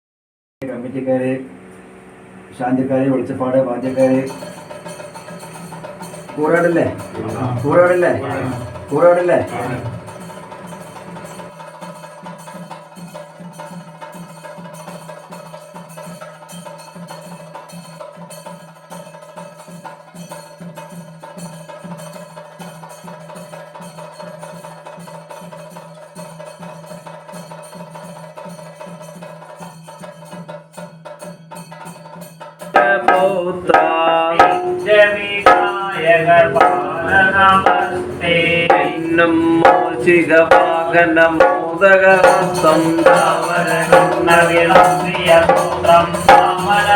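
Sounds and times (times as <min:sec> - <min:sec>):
steady drone: 0:01.3 - 0:11.6, 0:32.8 - 0:46.9
loud chanting: 0:03.8 - 0:11.5, 0:32.8 - 0:46.9
drum strokes: 0:03.8 - 0:46.9.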